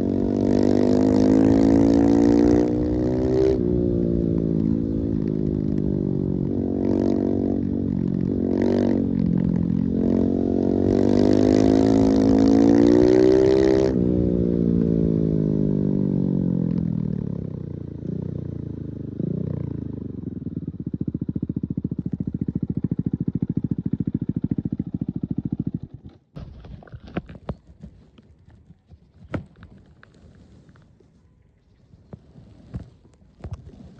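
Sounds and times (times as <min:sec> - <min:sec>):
motorcycle engine revving: 0:00.0 - 0:26.3.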